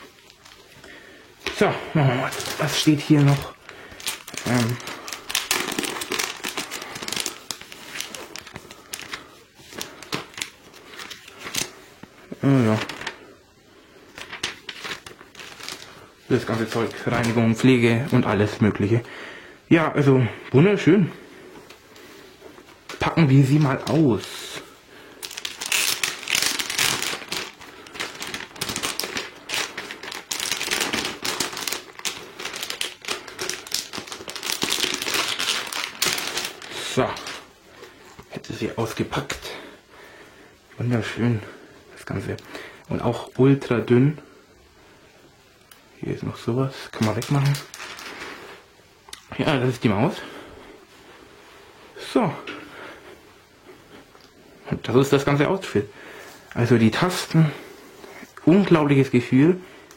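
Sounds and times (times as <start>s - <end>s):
packaging rustling and crinkling: 0.0s - 13.4s, 14.0s - 19.0s, 21.4s - 39.7s, 46.7s - 50.9s.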